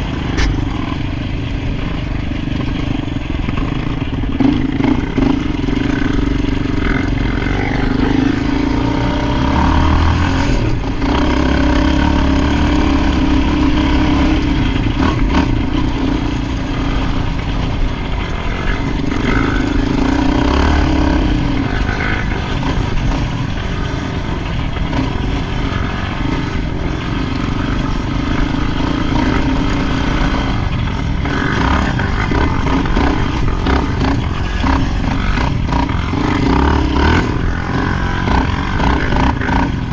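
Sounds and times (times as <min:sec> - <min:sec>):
atv engine running: 0:00.0 - 0:39.9.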